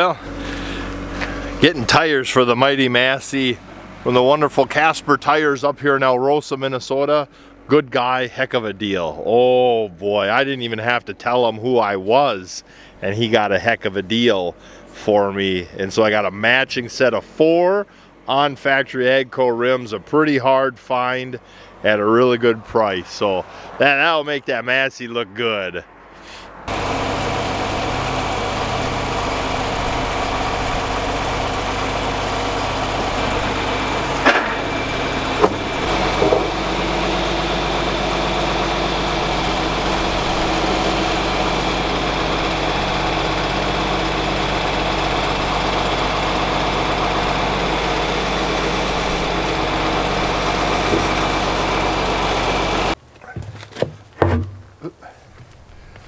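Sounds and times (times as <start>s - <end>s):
engine running: 0.0s - 5.8s, 26.2s - 56.0s.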